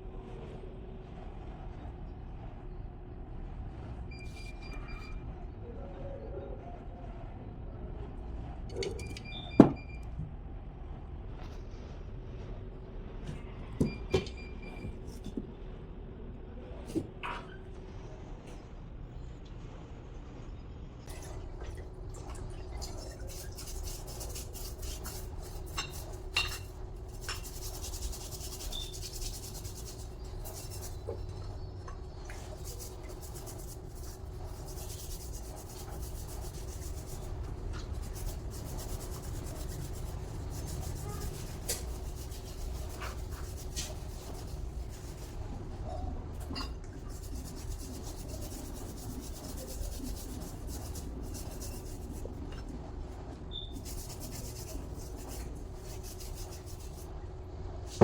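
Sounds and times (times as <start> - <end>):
steady low hum: 0.0 - 58.0
metal parts rubbing and scraping: 23.0 - 31.7.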